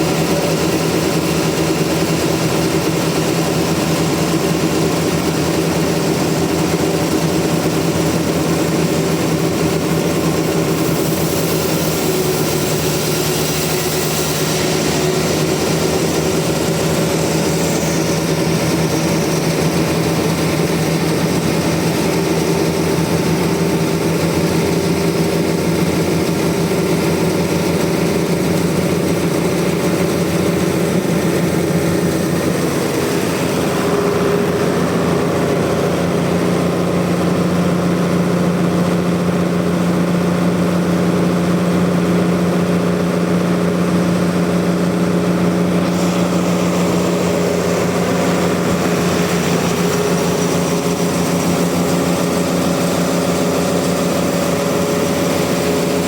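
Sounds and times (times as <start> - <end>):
sawmill engine running: 0.0 - 56.0.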